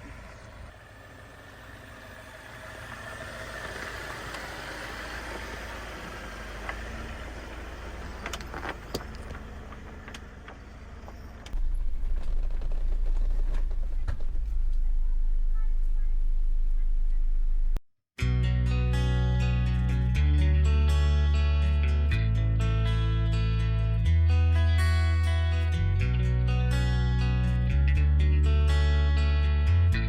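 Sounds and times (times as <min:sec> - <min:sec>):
engine and tyre noise: 0:00.0 - 0:17.8
loud low rumble: 0:11.6 - 0:17.8.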